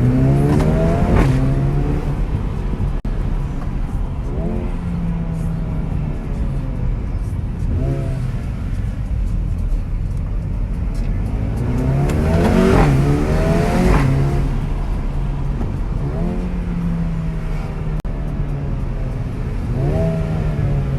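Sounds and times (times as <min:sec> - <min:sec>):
car engine revving: 0:00.0 - 0:20.9
exhaust crackles: 0:00.0 - 0:20.9.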